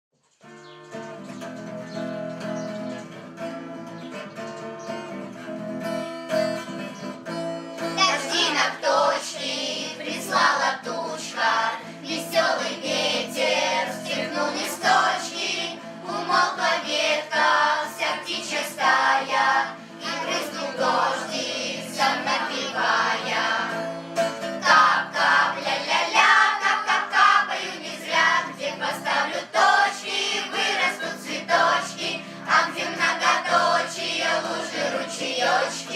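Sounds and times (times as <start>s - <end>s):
guitar playing: 0.4s - 35.9s
people singing: 8.0s - 35.9s.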